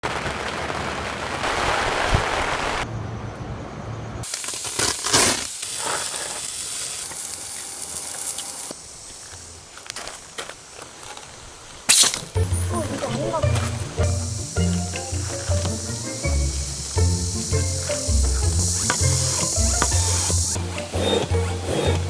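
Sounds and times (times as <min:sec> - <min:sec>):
rain falling: 0:00.0 - 0:02.9, 0:11.0 - 0:21.6.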